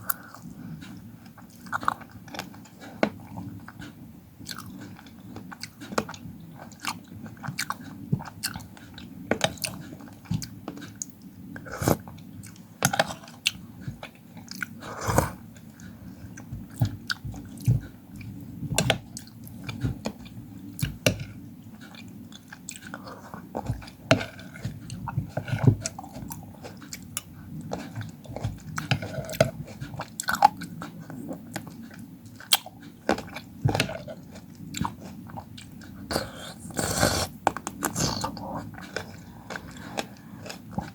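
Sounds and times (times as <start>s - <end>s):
crunchy chewing of fruit: 0.0s - 40.9s
wet mouth sounds: 34.7s - 40.9s.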